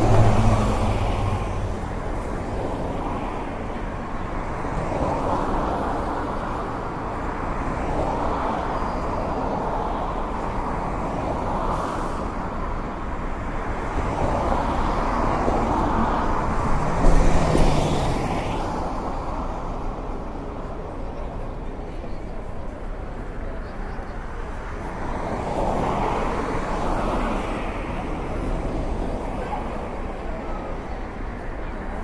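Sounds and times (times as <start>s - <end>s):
loud vehicle passing: 0.0s - 2.0s
passing road traffic: 0.0s - 32.0s.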